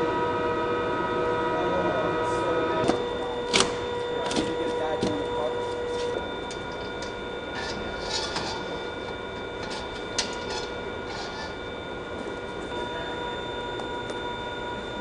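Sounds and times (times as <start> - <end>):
steady hum: 0.0 - 15.0
thin high whine: 0.0 - 15.0.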